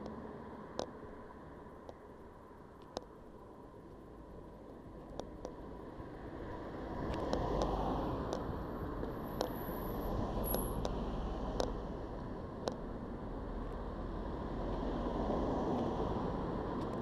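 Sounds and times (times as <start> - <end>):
sharp tick: 7.1 - 9.6, 10.4 - 12.9.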